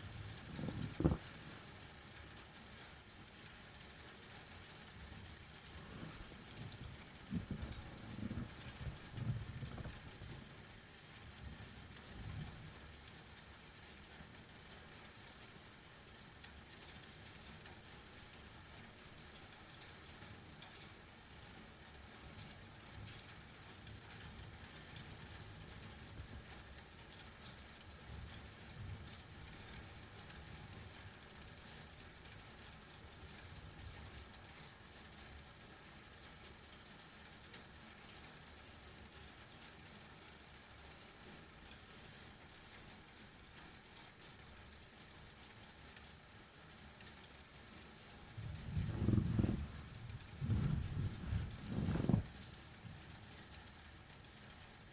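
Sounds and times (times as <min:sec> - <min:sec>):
low uneven rumble: 0:00.0 - 0:01.8, 0:04.9 - 0:12.6, 0:48.0 - 0:54.1
rain hissing: 0:00.0 - 0:01.8, 0:04.7 - 0:12.8, 0:47.5 - 0:54.7.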